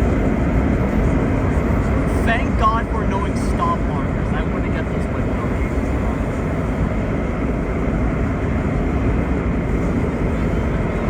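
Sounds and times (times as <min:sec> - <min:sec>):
subway train wheels rumbling: 0:00.0 - 0:11.0.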